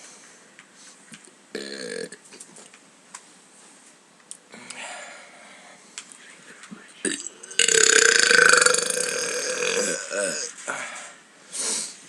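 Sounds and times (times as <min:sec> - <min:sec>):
long loud burp: 0:01.5 - 0:02.2, 0:07.1 - 0:10.5.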